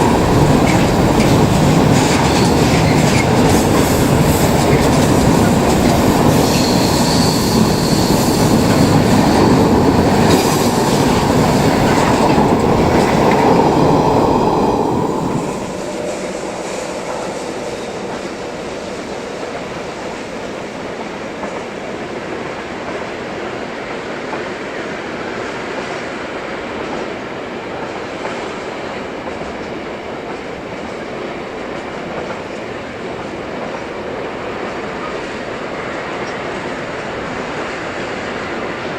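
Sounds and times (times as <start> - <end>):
high wheel squeal: 0.0 - 18.6
train wheels clattering on rails: 0.0 - 38.9.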